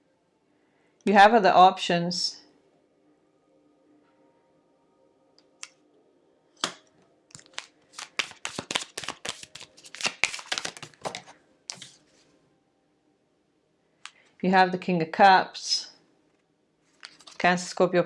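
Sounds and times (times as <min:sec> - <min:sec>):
sharp card snap: 0:06.6 - 0:11.9
cards being shuffled: 0:06.6 - 0:12.0, 0:17.0 - 0:17.5.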